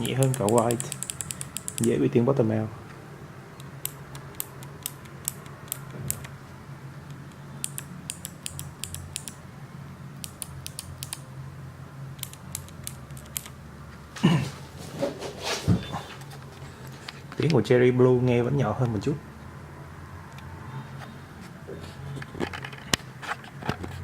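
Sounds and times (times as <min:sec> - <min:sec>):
mechanical keyboard switch clicks: 0:00.0 - 0:01.9, 0:03.6 - 0:06.3, 0:07.3 - 0:09.4, 0:10.2 - 0:11.2, 0:12.2 - 0:13.5.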